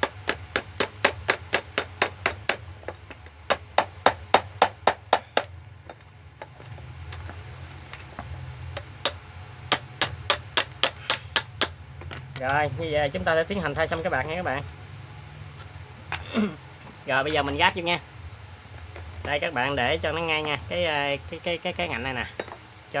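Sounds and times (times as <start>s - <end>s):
quick sharp hammer taps on metal: 0.0s - 2.6s, 3.5s - 5.5s, 8.8s - 11.8s.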